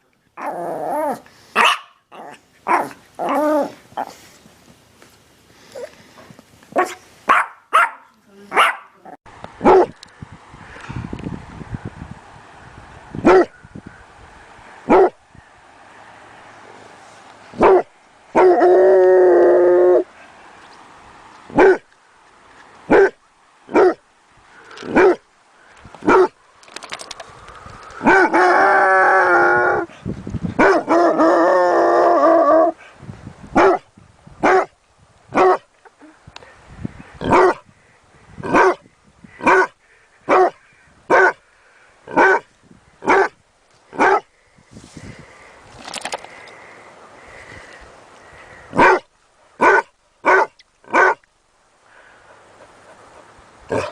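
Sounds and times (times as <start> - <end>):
dog barking: 1.6 - 3.4, 6.8 - 9.0, 9.6 - 9.9, 13.3 - 13.5, 14.9 - 15.2, 17.6 - 18.6, 21.6 - 21.8, 22.9 - 24.0, 24.9 - 25.2, 26.1 - 26.3, 30.6 - 31.0, 33.6 - 33.8, 34.4 - 34.7, 35.4 - 35.6, 37.2 - 37.6, 38.5 - 38.8, 39.4 - 39.7, 40.3 - 41.4, 42.2 - 43.4, 44.0 - 44.2, 48.8 - 49.0, 49.6 - 51.2.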